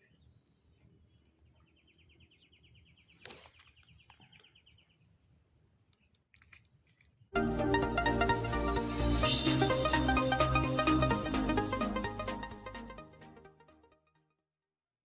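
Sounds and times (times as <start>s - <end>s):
loud electronic music: 7.4s - 13.4s
rapid pulsed chirping trill: 7.7s - 12.9s.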